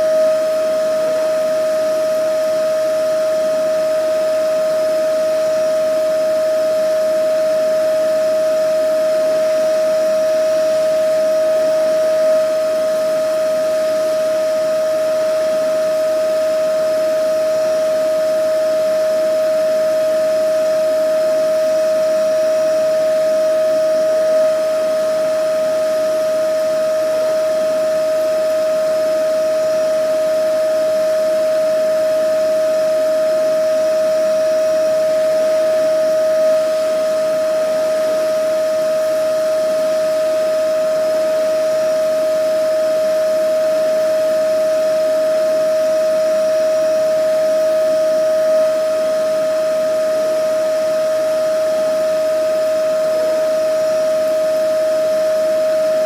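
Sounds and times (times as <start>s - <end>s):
vacuum cleaner running: 52.4s - 56.0s.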